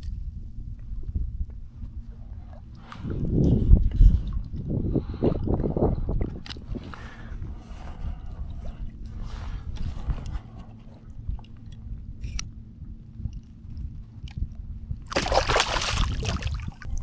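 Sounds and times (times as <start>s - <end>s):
low rumble: 0.0s - 17.0s
fish splashing in water: 15.1s - 17.0s.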